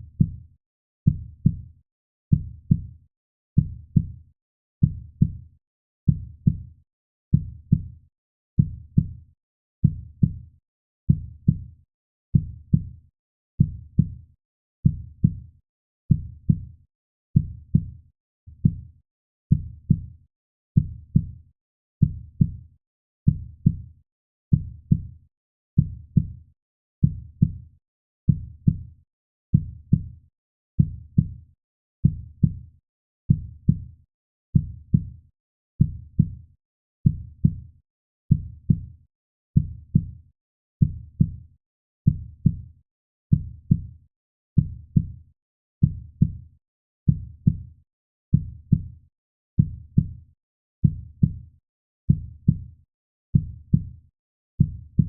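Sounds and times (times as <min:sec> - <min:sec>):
heartbeat: 0:02.3 - 0:02.9, 0:13.6 - 0:14.1, 0:33.3 - 0:33.9, 0:39.6 - 0:40.1, 0:42.1 - 0:42.6, 0:43.3 - 0:43.9, 0:45.8 - 0:46.3, 0:47.1 - 0:47.6, 0:49.6 - 0:50.1, 0:50.8 - 0:51.3, 0:52.1 - 0:52.6, 0:53.4 - 0:53.8, 0:54.6 - 0:55.0.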